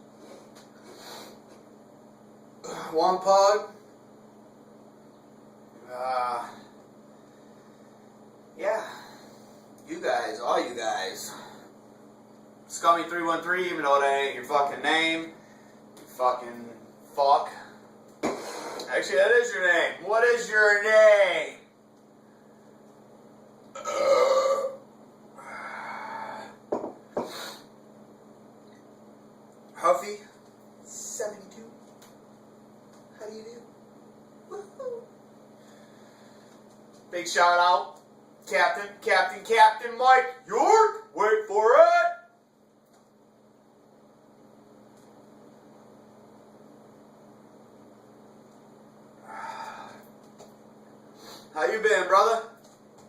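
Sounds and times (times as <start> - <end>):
low electrical hum: 0.0 - 53.0
man burping loudly: 23.8 - 24.8.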